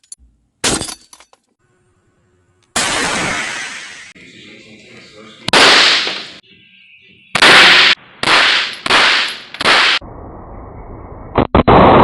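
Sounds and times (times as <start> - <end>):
gunshots with echo: 5.5 - 6.4, 7.4 - 10.0.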